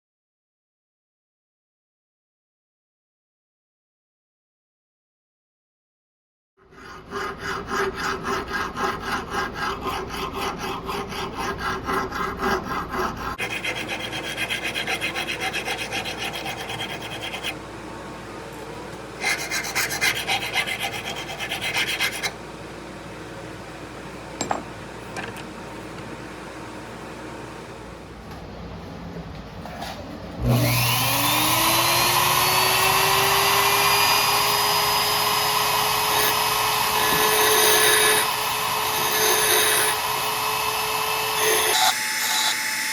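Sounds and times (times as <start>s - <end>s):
file rasping on steel: 6.6s - 17.6s, 19.2s - 22.4s, 30.6s - 42.7s.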